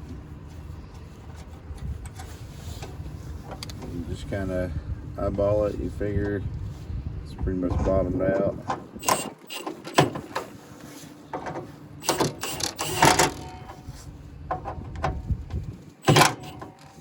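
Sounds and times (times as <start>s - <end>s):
metal clicks and clanks: 9.0s - 10.5s, 11.4s - 13.8s, 16.0s - 17.0s.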